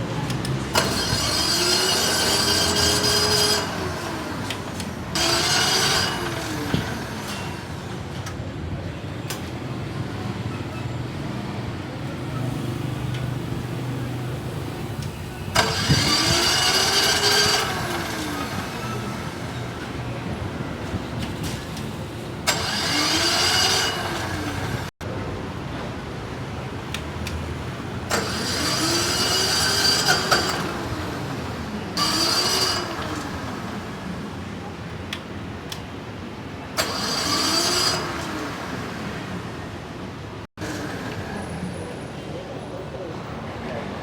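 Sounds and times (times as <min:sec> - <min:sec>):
generator starter cranking: 0:00.3 - 0:08.4, 0:14.5 - 0:24.9, 0:28.0 - 0:34.2, 0:36.8 - 0:39.6.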